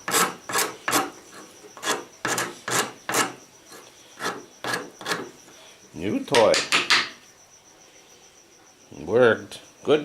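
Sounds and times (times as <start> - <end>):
wood file rasping on wood: 0.0 - 5.3.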